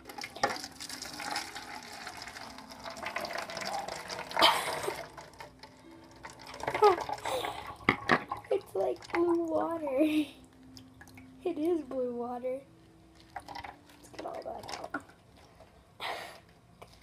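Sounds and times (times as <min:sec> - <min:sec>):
water pouring into a cup: 0:00.0 - 0:09.7, 0:13.1 - 0:15.6.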